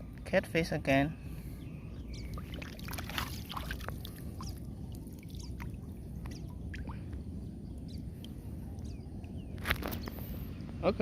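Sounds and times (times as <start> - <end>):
water splashing: 2.3 - 7.1.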